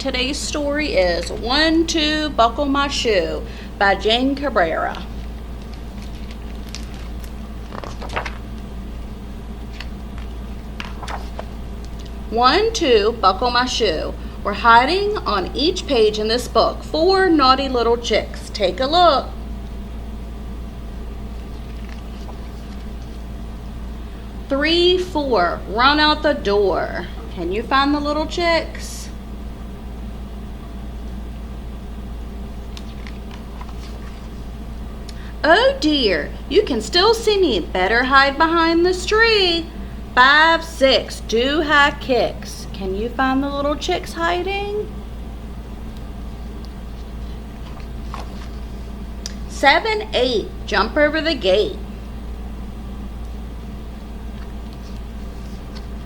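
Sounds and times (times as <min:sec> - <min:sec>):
steady low hum: 0:00.0 - 0:56.0
book clicks and rustles: 0:05.0 - 0:08.7, 0:09.7 - 0:12.2, 0:21.4 - 0:23.2, 0:32.7 - 0:34.5, 0:46.6 - 0:48.8, 0:54.3 - 0:56.0.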